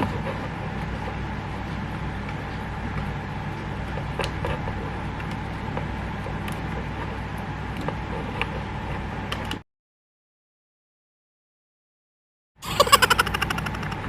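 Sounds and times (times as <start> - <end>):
steady low hum: 0.0 - 9.6, 12.6 - 14.0.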